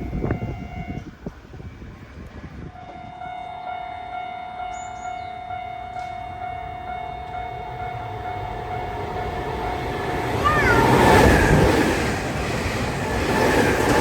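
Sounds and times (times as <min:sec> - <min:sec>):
train rumble: 0:00.0 - 0:14.0
level-crossing alarm ringing: 0:03.0 - 0:10.1.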